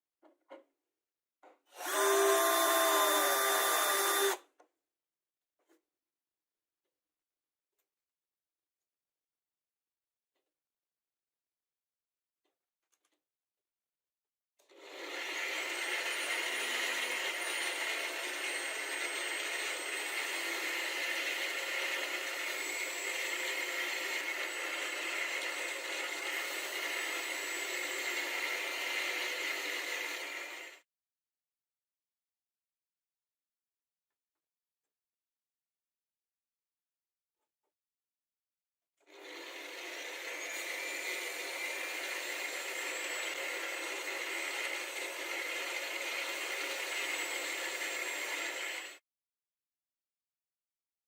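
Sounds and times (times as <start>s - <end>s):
electric power tool whirring: 1.7s - 4.4s, 14.7s - 30.8s, 39.1s - 49.0s
power tool motor whining: 1.7s - 4.4s.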